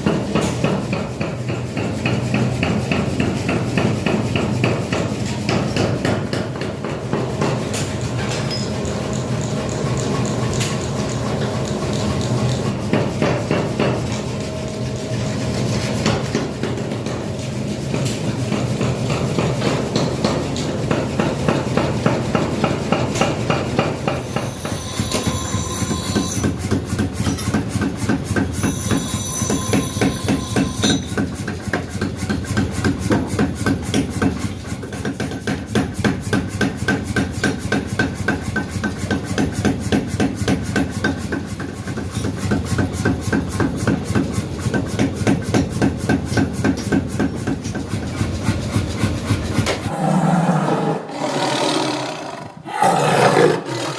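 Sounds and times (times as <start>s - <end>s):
machine knocking rhythmically: 29.7s - 49.9s.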